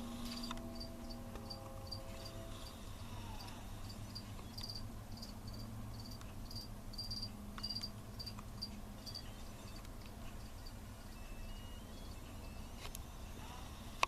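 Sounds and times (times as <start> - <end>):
low steady hum: 0.0 - 14.0
cricket chirping: 0.4 - 2.4, 3.8 - 8.4, 9.0 - 9.8.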